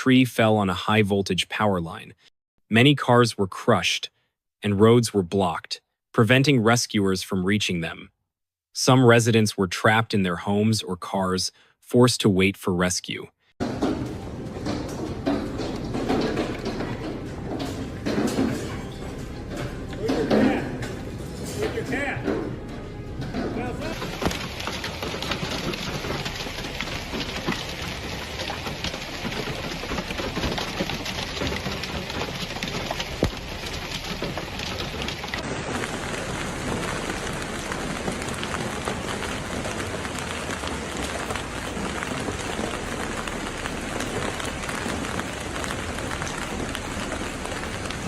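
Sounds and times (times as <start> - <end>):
heavy rain on hard surfaces: 13.6 - 48.0.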